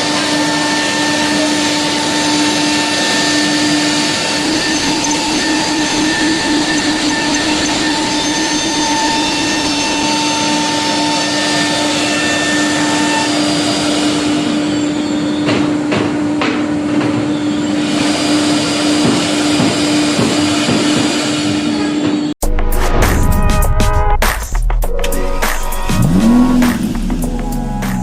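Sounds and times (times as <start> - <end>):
router cutting noise: 0.0 - 15.3, 25.8 - 28.0
router spindle tone: 0.0 - 15.5, 25.2 - 28.0
high-pitched tone: 25.0 - 28.0.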